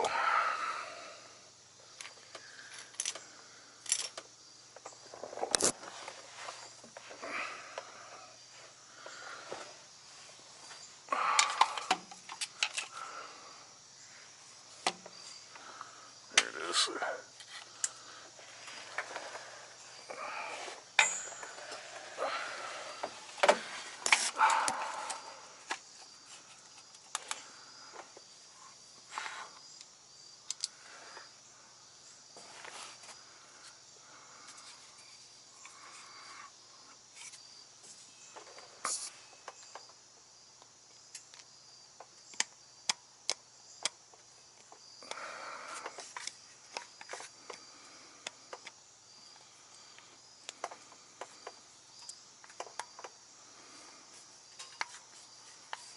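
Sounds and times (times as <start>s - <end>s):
hand tools and metal parts clinking: 2.0s - 7.8s, 10.6s - 13.0s, 20.7s - 22.2s.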